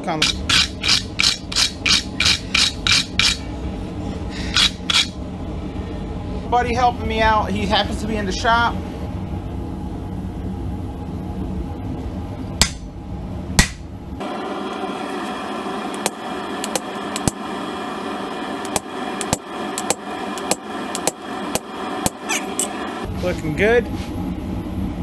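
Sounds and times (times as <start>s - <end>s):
hammer striking metal on anvil: 12.6s - 12.9s, 13.6s - 13.8s.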